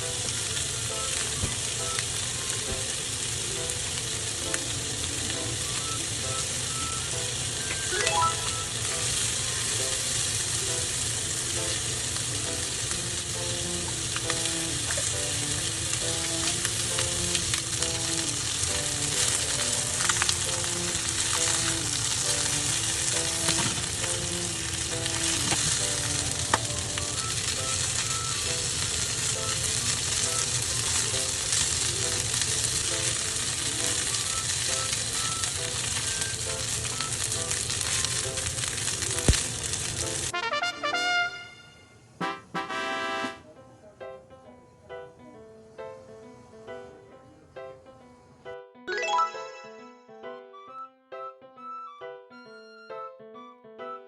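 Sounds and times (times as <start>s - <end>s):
food sizzling in a pan: 0.0s - 40.3s
simple background melody: 3.6s - 30.6s, 42.2s - 54.0s.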